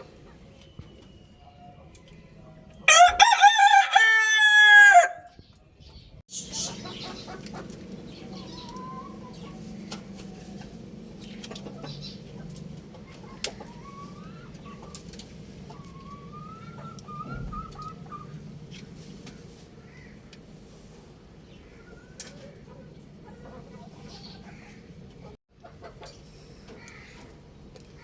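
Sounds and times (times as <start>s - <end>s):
rooster crowing: 2.9s - 5.3s.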